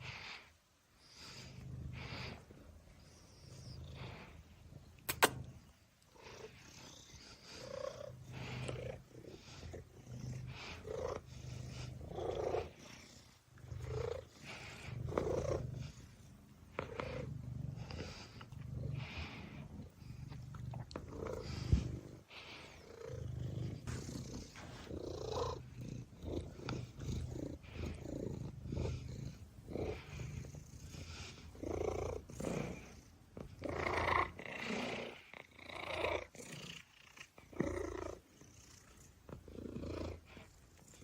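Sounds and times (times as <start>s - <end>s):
cat snoring: 0.0s - 5.4s, 6.2s - 41.0s
cat purring: 0.0s - 41.0s
sharp click: 5.1s - 5.4s.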